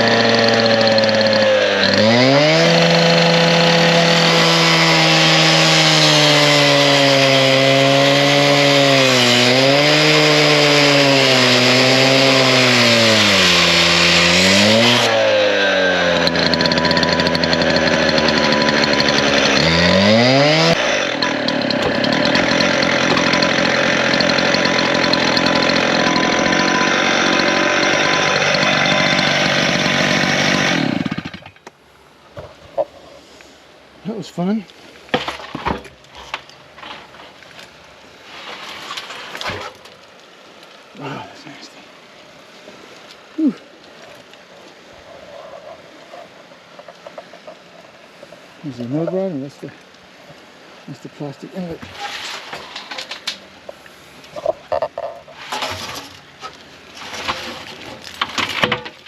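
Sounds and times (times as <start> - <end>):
cut-off saw cutting steel: 0.0 - 31.4.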